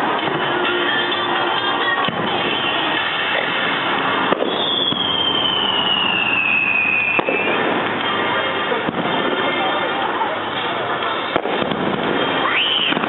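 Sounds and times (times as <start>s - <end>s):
fireworks bangs: 0.0s - 13.0s
fireworks crackling: 0.0s - 13.0s
falling whistle: 4.4s - 7.6s, 12.2s - 13.0s.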